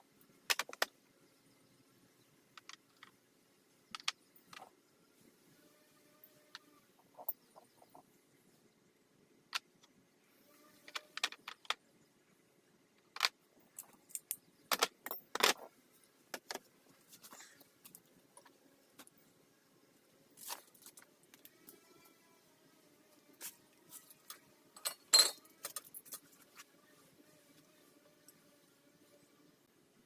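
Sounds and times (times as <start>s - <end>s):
metallic clinks of tools: 24.8s - 26.2s.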